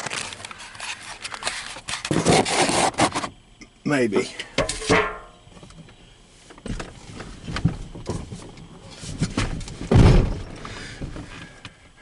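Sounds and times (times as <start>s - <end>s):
heavy low thump: 9.9s - 11.2s.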